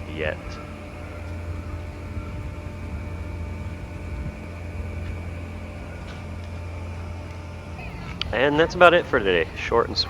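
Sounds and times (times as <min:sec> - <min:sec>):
even background noise: 0:00.0 - 0:10.0
low mechanical hum: 0:00.0 - 0:10.0
faint high tones: 0:07.1 - 0:10.0.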